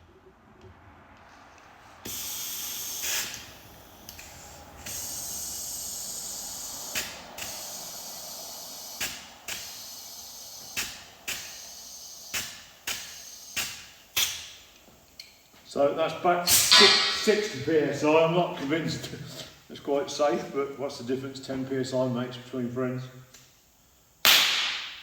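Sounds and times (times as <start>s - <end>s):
compressed air hissing: 1.8s - 15.1s, 16.4s - 18.4s
sharp knocks: 16.5s - 17.5s.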